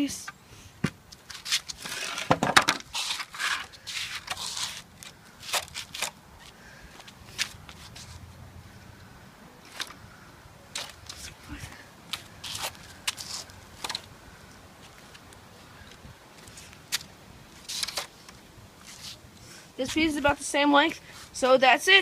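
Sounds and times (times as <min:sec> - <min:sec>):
wooden boards scraping and knocking: 0:00.8 - 0:04.8.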